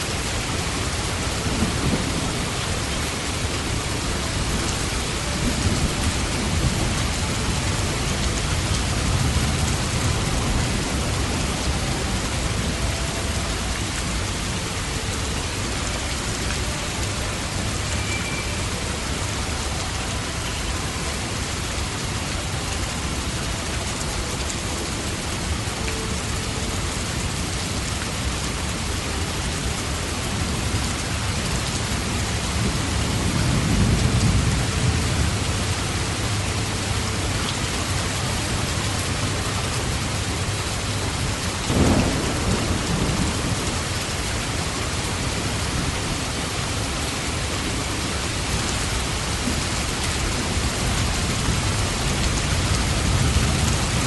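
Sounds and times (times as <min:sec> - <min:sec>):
heavy rain: 0:00.0 - 0:54.0
low rumble of thunder: 0:00.3 - 0:14.6, 0:29.8 - 0:36.0, 0:39.2 - 0:47.0, 0:47.8 - 0:54.0
sharp thunderclap: 0:41.7 - 0:43.8.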